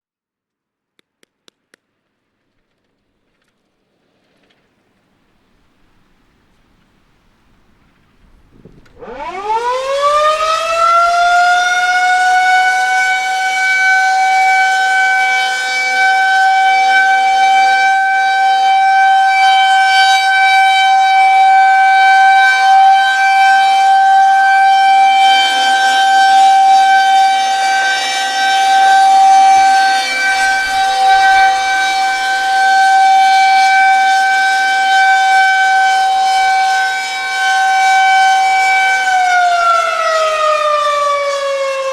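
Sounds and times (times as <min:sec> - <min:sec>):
warning siren steady tone: 0:08.8 - 0:41.9.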